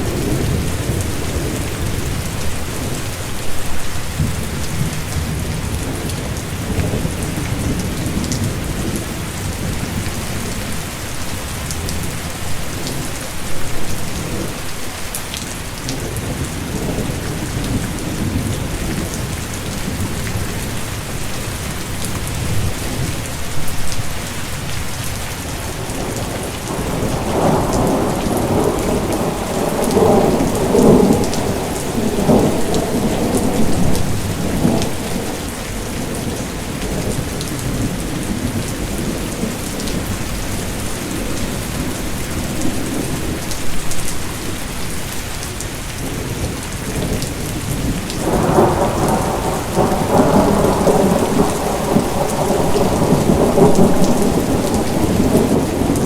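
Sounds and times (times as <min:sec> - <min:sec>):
steady rain falling: 0:00.0 - 0:56.0
rolling thunder: 0:25.5 - 0:43.4, 0:46.1 - 0:56.0.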